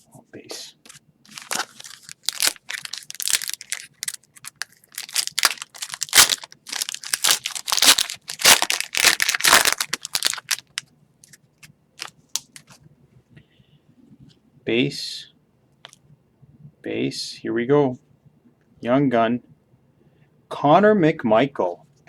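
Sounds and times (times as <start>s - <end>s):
plastic wrapper torn and crinkled: 1.3s - 11.4s, 12.0s - 12.8s.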